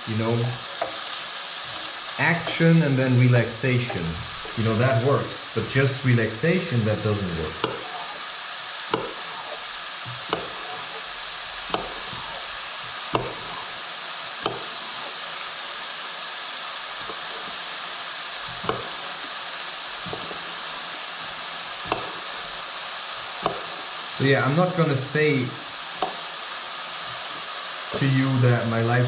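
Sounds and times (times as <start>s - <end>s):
mushrooms sizzling in a pan: 0.0s - 29.0s
utensil knocking against pan: 0.8s - 1.1s, 7.6s - 8.2s, 8.9s - 11.0s, 11.7s - 12.4s, 13.1s - 13.7s, 14.4s - 14.8s, 18.6s - 19.0s, 20.0s - 20.5s, 21.8s - 22.3s, 23.4s - 23.8s, 26.0s - 26.2s.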